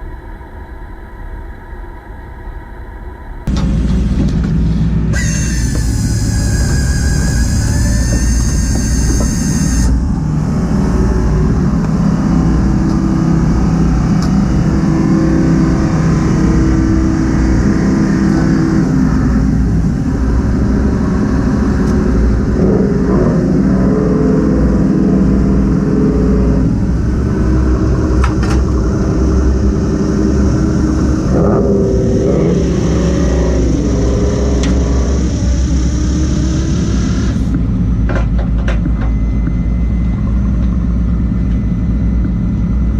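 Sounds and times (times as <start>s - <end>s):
hum shifting in pitch: 0.0s - 42.9s
boat machinery rumble: 2.9s - 42.9s.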